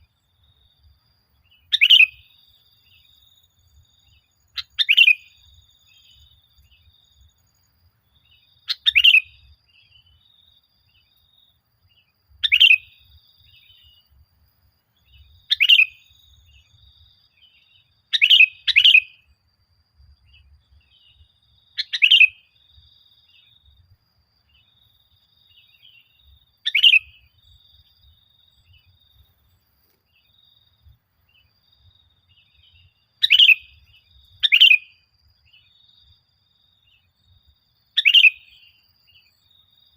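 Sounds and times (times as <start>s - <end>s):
bulbul calling: 1.5s - 3.2s, 4.1s - 6.9s, 8.4s - 10.1s, 12.4s - 14.0s, 15.0s - 16.7s, 18.1s - 19.2s, 21.8s - 22.5s, 25.6s - 27.4s, 32.4s - 35.1s, 38.0s - 38.8s.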